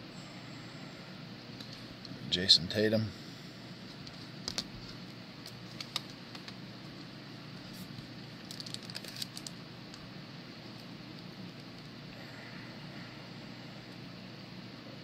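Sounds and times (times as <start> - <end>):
cards in plastic sleeves clicking: 5.4 - 6.6.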